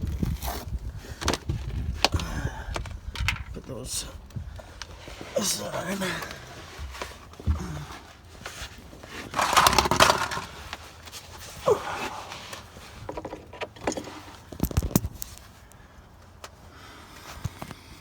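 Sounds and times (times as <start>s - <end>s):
tools scraping and rustling: 4.6s - 15.4s.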